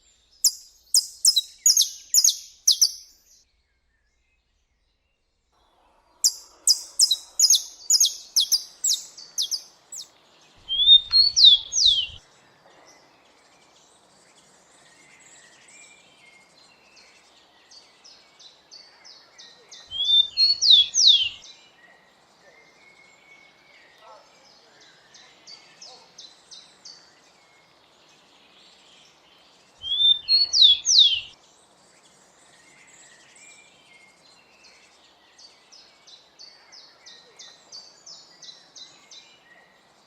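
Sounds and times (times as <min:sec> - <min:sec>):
sparrow singing: 0:00.4 - 0:03.4, 0:06.2 - 0:12.2, 0:19.9 - 0:21.4, 0:29.8 - 0:31.4.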